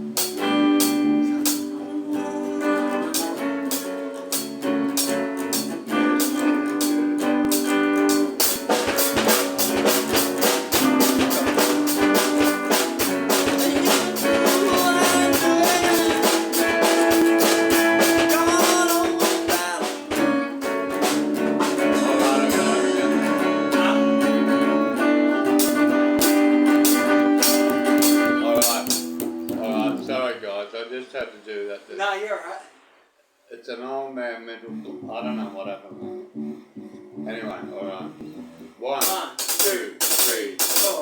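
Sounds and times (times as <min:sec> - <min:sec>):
drum kit beat: 0:00.0 - 0:30.0, 0:39.0 - 0:41.0
guitar: 0:00.0 - 0:30.6, 0:34.2 - 0:41.0.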